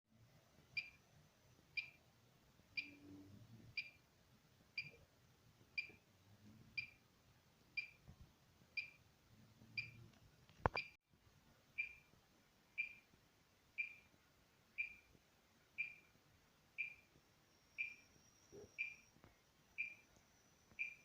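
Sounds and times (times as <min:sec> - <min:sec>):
high-pitched alarm beeps: 0:02.8 - 0:03.1, 0:11.8 - 0:12.1, 0:12.8 - 0:13.1, 0:13.8 - 0:14.1, 0:14.8 - 0:15.2, 0:15.8 - 0:16.1, 0:16.8 - 0:21.0.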